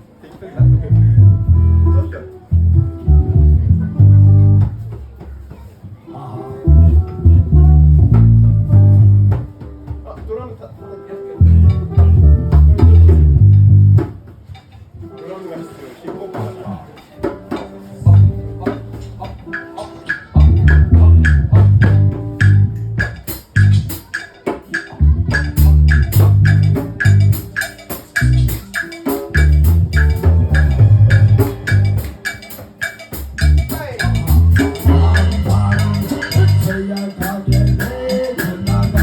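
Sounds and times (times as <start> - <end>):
drums: 0.0 - 6.0, 6.6 - 10.5, 11.4 - 15.2, 15.9 - 39.0
bass guitar line: 0.6 - 5.1, 6.5 - 10.0, 11.4 - 14.2, 18.0 - 24.0, 24.8 - 39.0
guitar chops: 6.6 - 10.5, 11.4 - 15.3, 16.0 - 39.0.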